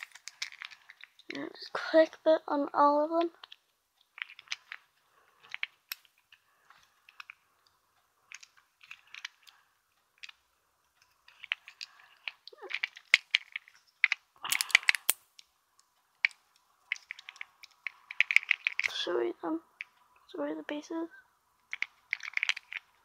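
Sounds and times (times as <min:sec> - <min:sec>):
plastic fidget toy clicking: 0:11.0 - 0:19.0, 0:21.6 - 0:23.0.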